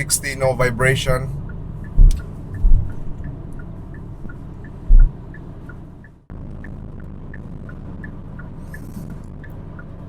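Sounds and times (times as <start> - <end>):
car road and drivetrain rumble: 0.0 - 10.0
turn signal ticking: 0.0 - 10.0
heavy low thump: 1.9 - 3.2, 4.8 - 5.2.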